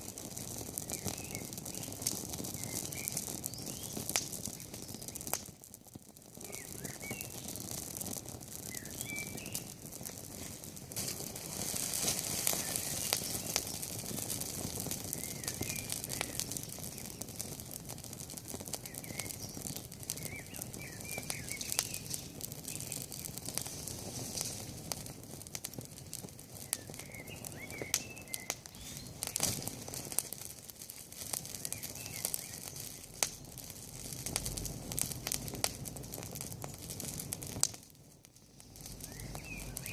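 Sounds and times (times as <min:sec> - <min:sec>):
campfire crackling: 0:00.0 - 0:39.9
small birds chirping: 0:00.2 - 0:05.5, 0:06.3 - 0:25.1, 0:26.2 - 0:33.7, 0:38.4 - 0:39.9.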